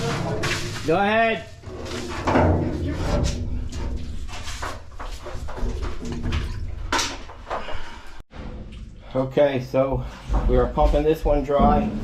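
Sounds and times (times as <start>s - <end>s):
knocks and clatters: 1.7s - 9.1s, 10.0s - 12.0s.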